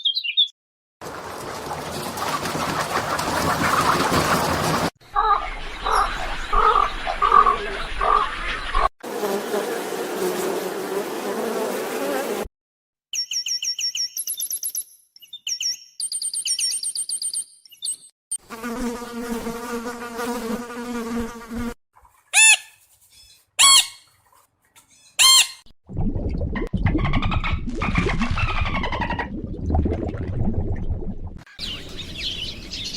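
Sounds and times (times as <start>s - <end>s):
insect buzzing: 9.1s - 12.5s, 18.4s - 21.8s
high quick bird chirps: 22.4s - 24.1s.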